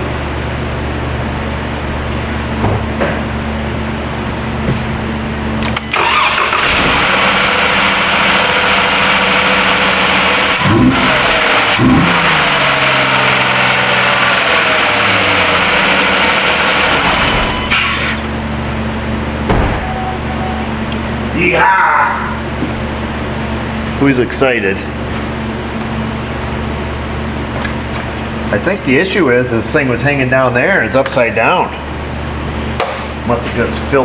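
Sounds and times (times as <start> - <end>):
steady hum: 0.0 - 34.0
car engine starting and revving: 5.7 - 18.3.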